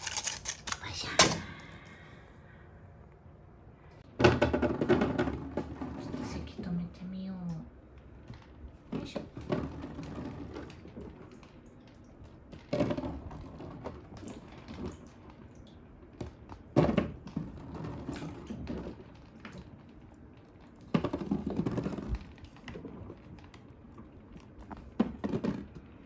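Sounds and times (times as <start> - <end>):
pieces clattering on wooden track: 0.0 - 0.9.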